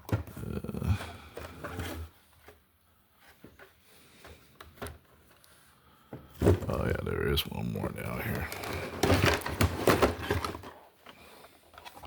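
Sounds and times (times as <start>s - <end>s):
rummaging through box of toy cars: 0.0s - 5.4s, 8.1s - 12.0s.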